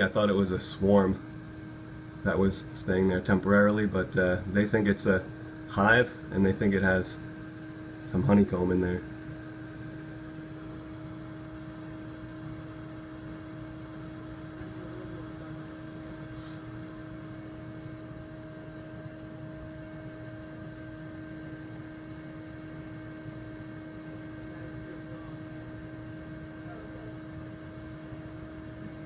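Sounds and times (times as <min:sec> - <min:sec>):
vacuum motor humming: 0:00.0 - 0:29.0.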